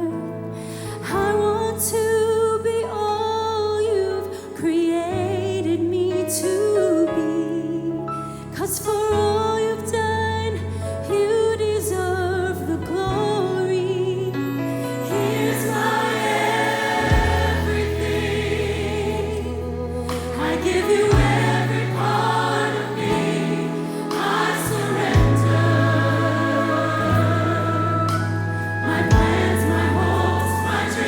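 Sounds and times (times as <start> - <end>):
gospel choir singing: 14.7 - 31.0
long-held bass notes: 24.7 - 31.0.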